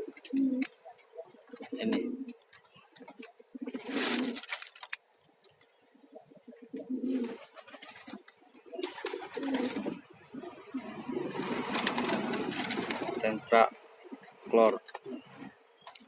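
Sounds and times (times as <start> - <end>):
pigeons cooing: 0.0 - 4.7, 5.8 - 15.8.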